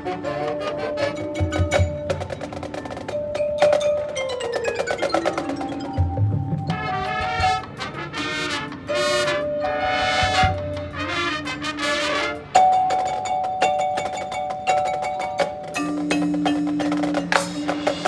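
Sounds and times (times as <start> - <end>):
marching band music: 0.0 - 18.0
percussion: 0.0 - 18.0
fast falling run of notes: 0.1 - 13.0.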